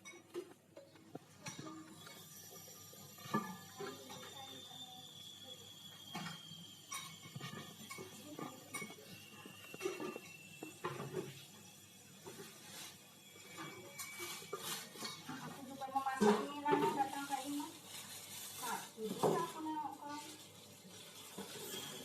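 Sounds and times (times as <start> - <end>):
metal and glass clinking: 0.0 - 17.1, 20.9 - 22.0
faint high steady tone: 1.5 - 14.7.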